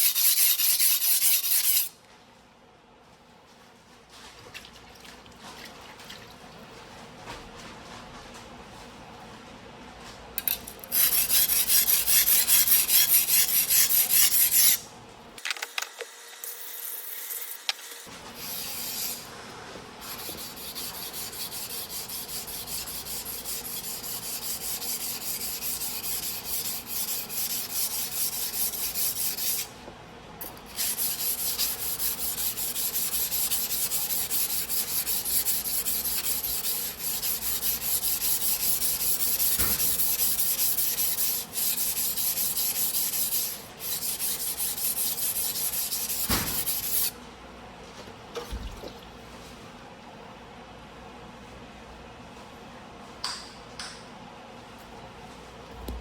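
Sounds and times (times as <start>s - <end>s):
knife blade scraping on whetstone: 0.0s - 1.9s, 10.4s - 14.8s, 18.4s - 19.3s.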